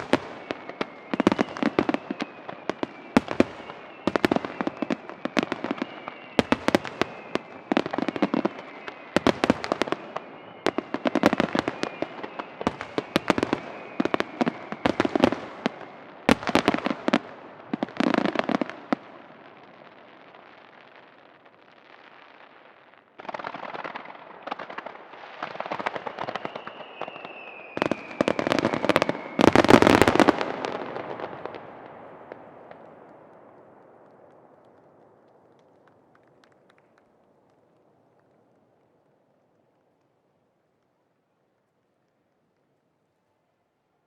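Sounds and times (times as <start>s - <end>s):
thin falling whistle: 0.0s - 9.5s, 25.9s - 30.1s.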